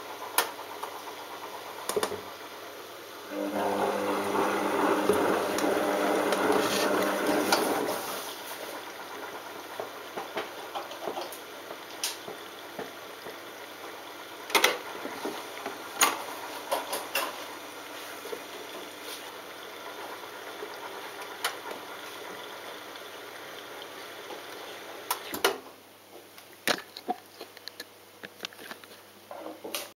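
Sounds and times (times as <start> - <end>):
washing machine motor hum: 0.0 - 25.4
water gurgling and trickling: 3.3 - 25.1.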